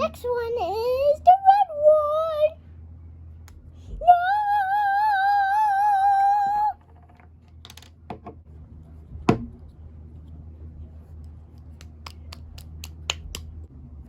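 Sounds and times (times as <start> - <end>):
child singing high note: 4.0 - 6.8.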